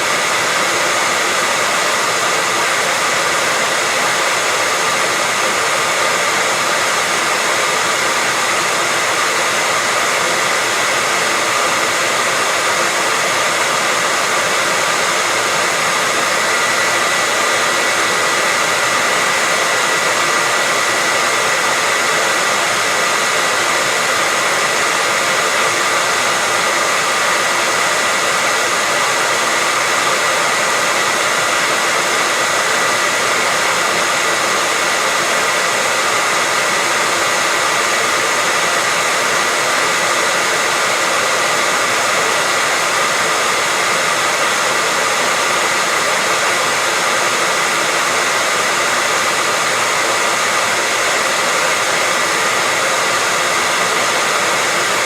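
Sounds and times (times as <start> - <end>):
hair dryer running: 0.0 - 55.0.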